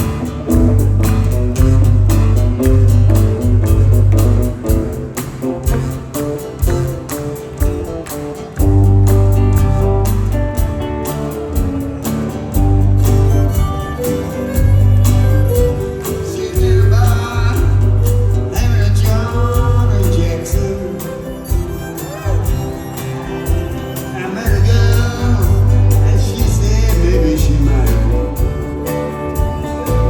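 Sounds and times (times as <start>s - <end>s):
heavy pulsing bass: 0.0s - 6.9s, 11.6s - 14.0s
guitar: 0.0s - 30.0s
fiddle: 12.6s - 17.5s, 20.6s - 26.4s.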